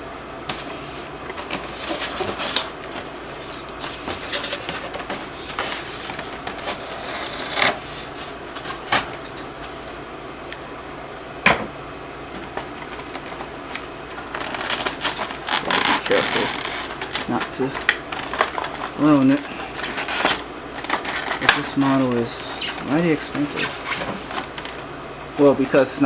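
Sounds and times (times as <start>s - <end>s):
packaging rustling: 0.5s - 10.6s, 12.3s - 26.0s.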